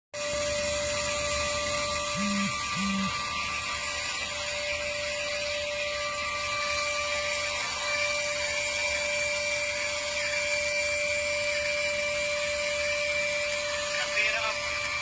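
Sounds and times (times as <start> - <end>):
vacuum cleaner running: 0.2 - 15.0
short low hums: 2.1 - 3.2.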